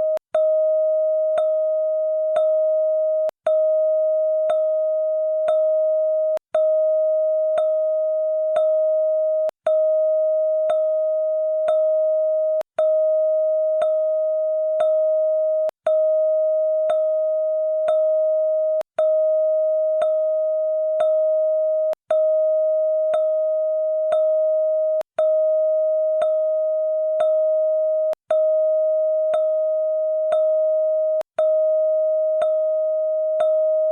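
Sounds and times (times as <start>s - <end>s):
click: 33.4s - 33.6s.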